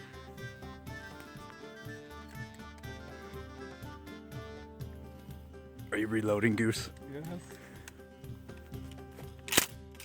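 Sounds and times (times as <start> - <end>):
folk music with fiddle: 0.0 - 9.3.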